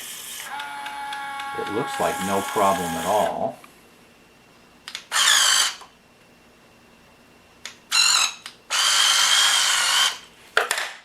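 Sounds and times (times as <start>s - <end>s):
electric motors whirring: 0.0s - 3.6s, 4.9s - 5.9s, 7.9s - 10.3s.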